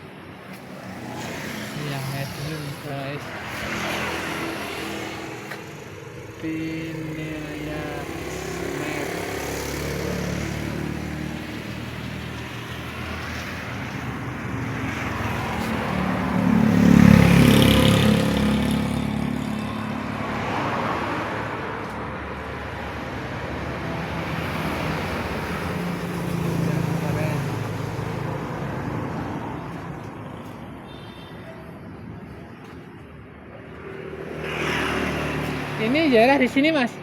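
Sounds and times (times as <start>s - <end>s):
vehicle engines running: 0.0s - 20.3s.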